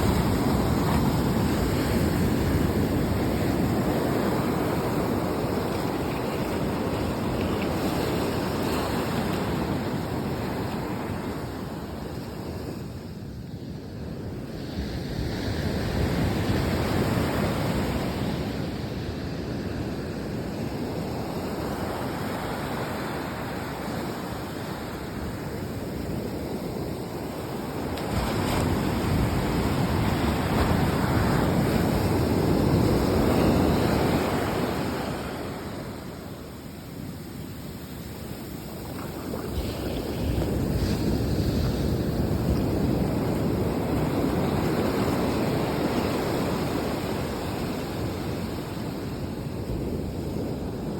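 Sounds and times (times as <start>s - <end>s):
sea waves washing in: 0.0s - 50.9s
wind buffeting microphone: 23.5s - 50.9s.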